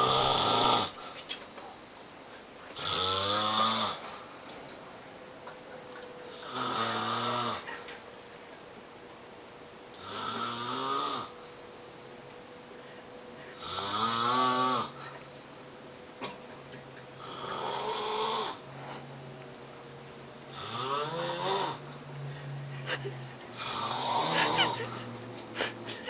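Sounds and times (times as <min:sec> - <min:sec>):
person snoring loudly: 0:00.0 - 0:01.0, 0:02.8 - 0:04.2, 0:06.3 - 0:07.8, 0:10.0 - 0:11.3, 0:13.6 - 0:15.1, 0:17.2 - 0:18.6, 0:20.5 - 0:21.8, 0:23.6 - 0:25.0.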